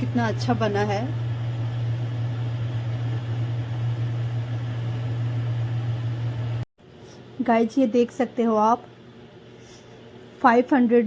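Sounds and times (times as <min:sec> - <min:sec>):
low hum: 0:00.0 - 0:07.4.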